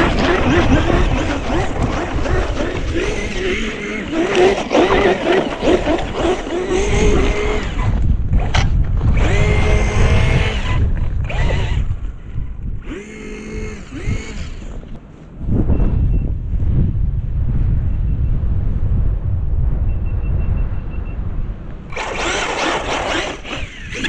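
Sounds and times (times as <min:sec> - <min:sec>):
electric motor and gears whining: 0:00.0 - 0:15.2, 0:21.9 - 0:24.0
wind rumble on microphone: 0:00.0 - 0:24.0.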